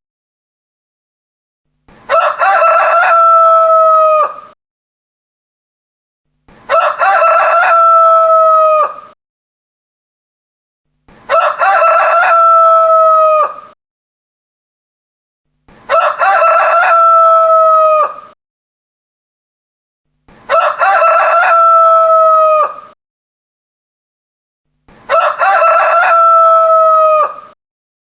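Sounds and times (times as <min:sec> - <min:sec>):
rooster crowing: 0:02.1 - 0:04.6, 0:06.7 - 0:09.2, 0:11.3 - 0:13.8, 0:15.9 - 0:18.4, 0:20.5 - 0:23.0, 0:25.1 - 0:27.6.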